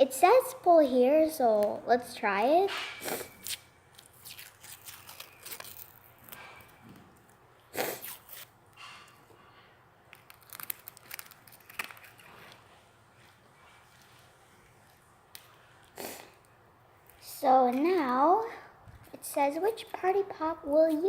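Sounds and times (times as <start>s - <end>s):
packaging rustling and tearing: 3.2s - 6.8s, 7.9s - 8.5s, 10.1s - 12.8s.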